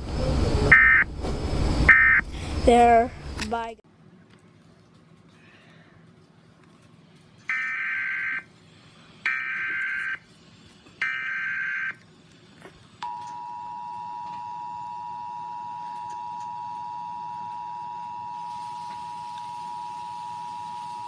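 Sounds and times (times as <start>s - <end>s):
two-tone attention signal: 0.7s - 1.0s.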